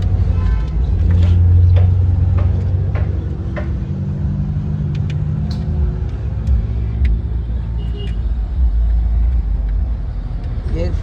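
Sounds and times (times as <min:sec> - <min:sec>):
vehicle engine rumble: 0:00.0 - 0:11.0
light clicks and taps: 0:04.9 - 0:07.3, 0:08.8 - 0:10.6.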